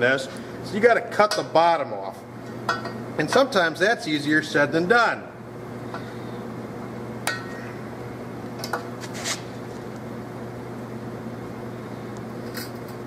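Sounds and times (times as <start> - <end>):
low mechanical hum: 0.0 - 13.0
brief scrape: 9.0 - 9.5.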